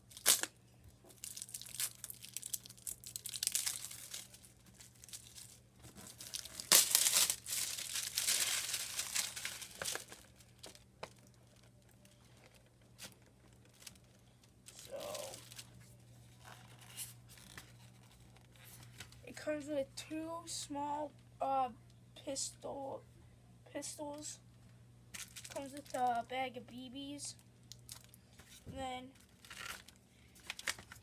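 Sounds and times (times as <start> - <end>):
plastic wrapping crinkling: 0.0 - 0.5, 1.1 - 17.6, 25.1 - 26.1, 27.7 - 28.2, 29.2 - 31.0.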